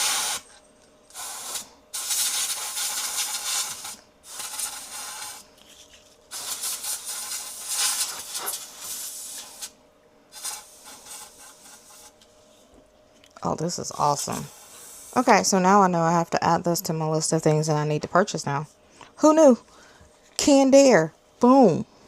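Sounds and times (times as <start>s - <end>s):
compressed air spraying: 0.0s - 0.4s, 1.1s - 5.4s, 6.3s - 12.2s, 14.0s - 15.3s.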